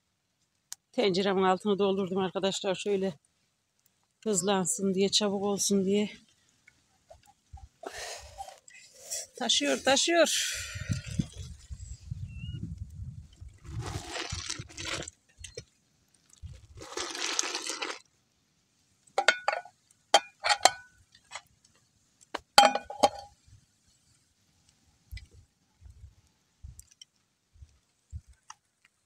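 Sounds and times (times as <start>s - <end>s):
metal utensils clinking on pot: 19.2s - 20.9s, 22.6s - 23.3s.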